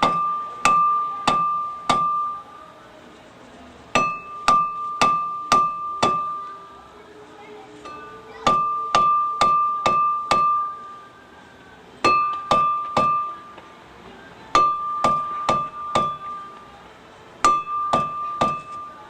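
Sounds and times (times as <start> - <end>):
hammer on ringing metal: 0.0 - 2.6, 3.9 - 6.8, 7.8 - 11.2, 12.0 - 13.6, 14.5 - 16.8, 17.4 - 19.0.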